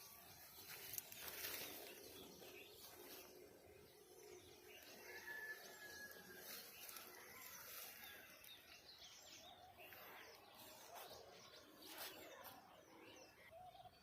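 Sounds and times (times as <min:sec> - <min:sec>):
small birds chirping: 0:00.0 - 0:14.0.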